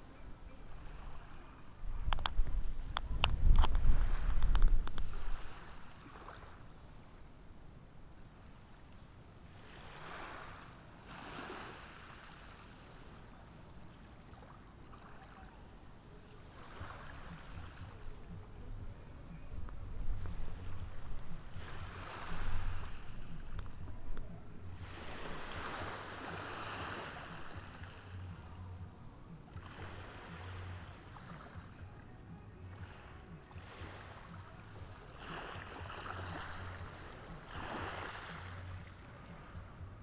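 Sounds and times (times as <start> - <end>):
ocean surf breaking: 20.4 - 28.2.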